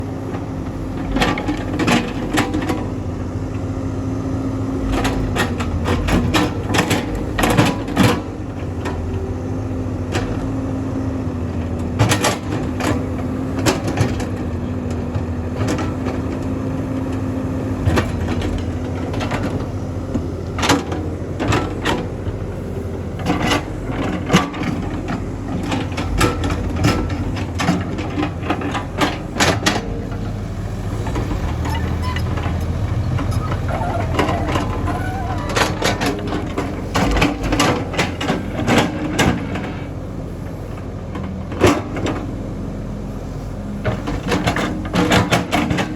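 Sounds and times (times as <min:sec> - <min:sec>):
excavator diesel engine: 0:00.0 - 0:45.9.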